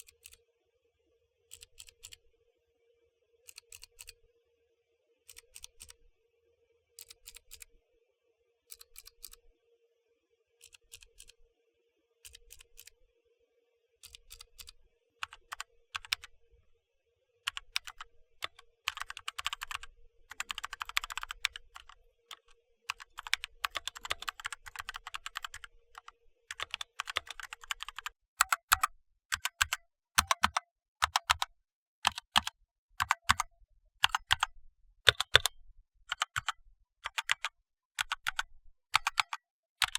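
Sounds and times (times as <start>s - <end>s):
mechanical keyboard typing: 1.5s - 2.2s, 3.5s - 4.1s, 14.0s - 16.3s, 17.5s - 34.5s, 35.1s - 39.9s.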